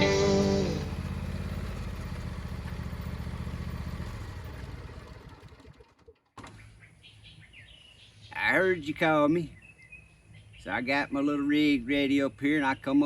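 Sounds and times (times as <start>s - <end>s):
guitar music: 0.0s - 1.0s
small engine idling: 0.0s - 6.6s.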